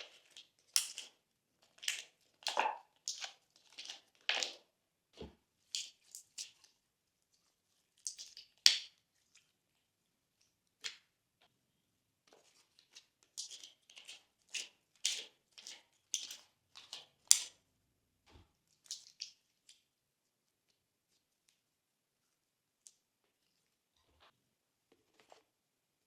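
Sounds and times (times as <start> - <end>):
slime squelching and popping: 0.0 - 4.6.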